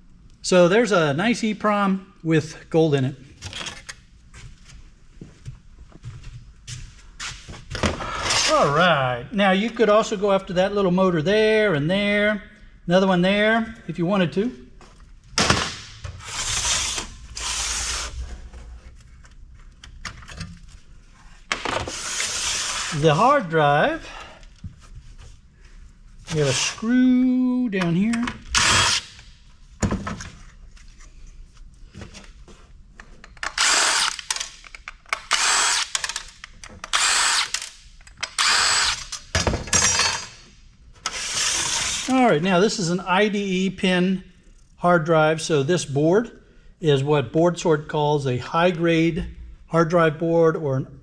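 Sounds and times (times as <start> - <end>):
small metal parts clicking: 33.3 - 40.4
cordless power driver spinning: 35.3 - 36.2, 36.9 - 37.6, 38.3 - 39.1.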